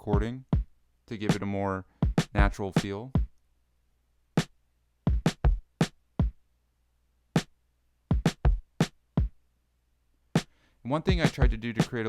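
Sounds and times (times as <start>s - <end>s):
kick drum: 2.0s - 2.6s, 5.1s - 6.4s, 8.1s - 9.4s, 11.1s - 11.6s.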